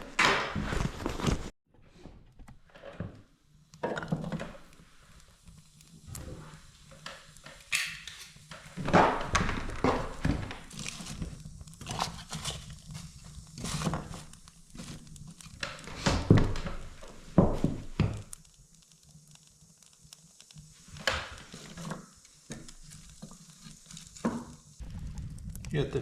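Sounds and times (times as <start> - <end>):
knocks and scuffs of ski gear: 0.0 - 1.5.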